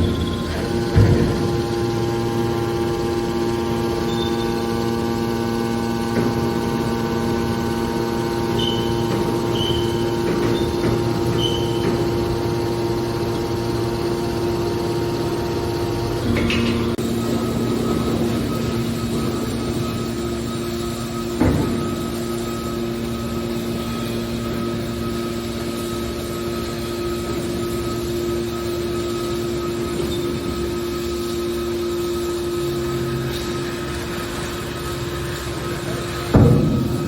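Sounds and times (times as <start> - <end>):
electric motor and pump humming: 0.0 - 37.0.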